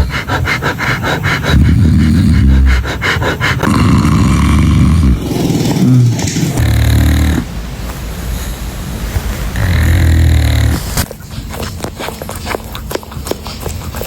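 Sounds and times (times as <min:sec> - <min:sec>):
person snoring loudly: 0:00.8 - 0:07.5, 0:09.6 - 0:11.0.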